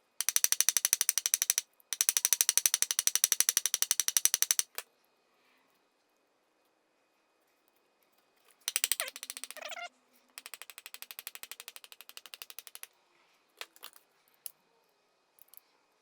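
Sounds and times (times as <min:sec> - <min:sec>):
rapid clicking: 0:00.2 - 0:04.8, 0:08.7 - 0:12.9.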